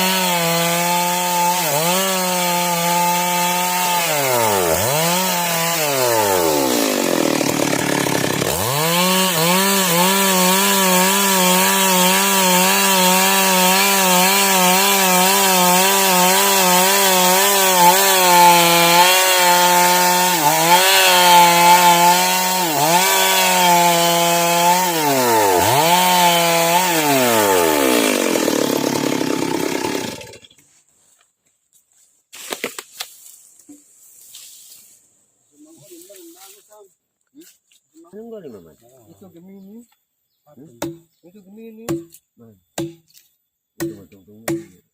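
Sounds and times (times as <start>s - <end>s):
chainsaw ripping a log: 0.0s - 30.6s.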